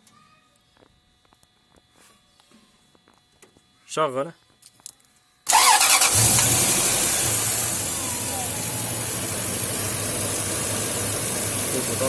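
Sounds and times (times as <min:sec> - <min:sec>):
car engine starting and idling: 0:05.5 - 0:12.0.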